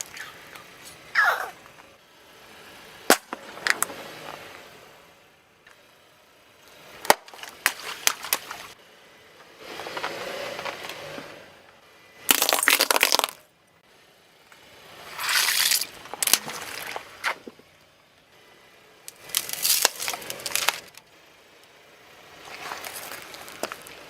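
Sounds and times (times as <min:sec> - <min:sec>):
loud crunching under tyre: 0:03.0 - 0:05.0, 0:06.6 - 0:13.5, 0:14.5 - 0:17.9, 0:19.1 - 0:21.1, 0:21.8 - 0:24.0
brittle objects cracking and snapping: 0:12.3 - 0:13.4, 0:15.3 - 0:17.4, 0:19.1 - 0:21.0.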